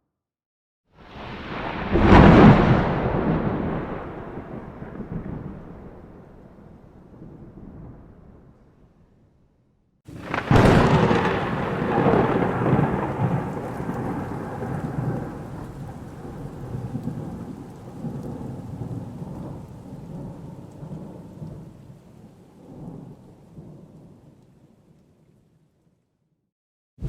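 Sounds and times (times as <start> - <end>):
thunder crack: 1.0 - 8.5, 10.1 - 19.6
rolling thunder rumble: 1.0 - 9.1, 10.1 - 24.3.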